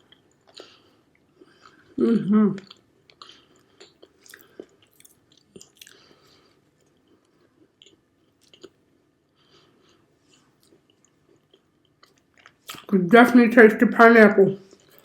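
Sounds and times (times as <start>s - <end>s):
wet chewing smacks and clicks: 0.1s - 1.9s, 2.6s - 8.8s, 9.8s - 12.9s.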